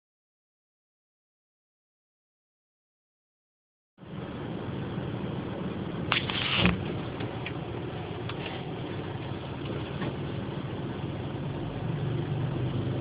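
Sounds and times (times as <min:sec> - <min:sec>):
vehicle engine humming: 0:04.0 - 0:13.0.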